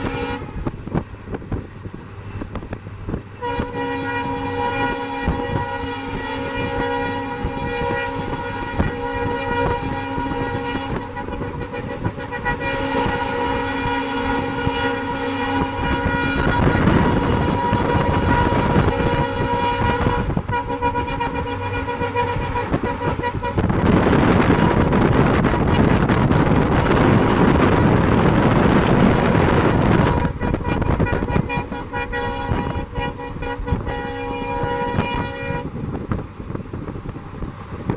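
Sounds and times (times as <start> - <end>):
locomotive air horn honks: 0.0 - 0.7, 3.4 - 25.0, 27.0 - 35.8
loud rushing rumble: 0.0 - 3.8, 7.3 - 37.9.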